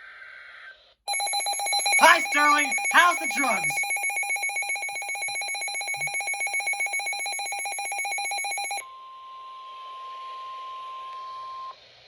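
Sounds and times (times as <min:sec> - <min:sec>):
pulsing electronic alert alarm: 0:01.1 - 0:08.8
steady single-pitch alarm tone: 0:01.1 - 0:08.8.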